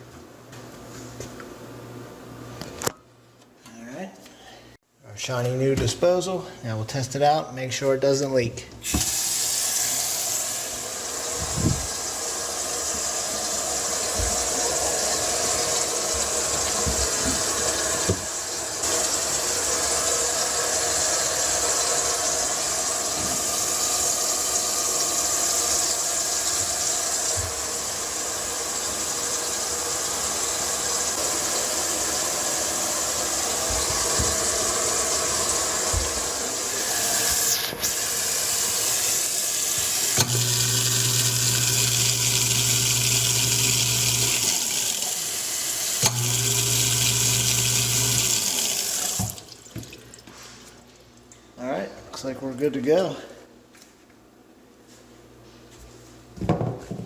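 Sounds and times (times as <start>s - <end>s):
tap water rushing: 8.8s - 32.4s, 33.1s - 51.2s
garbage disposal motor running: 8.8s - 50.2s.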